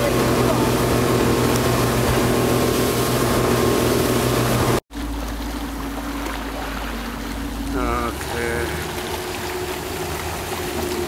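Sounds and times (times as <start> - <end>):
motorboat engine running: 0.0 - 11.0
water noise: 0.0 - 11.0
wind: 0.0 - 11.0.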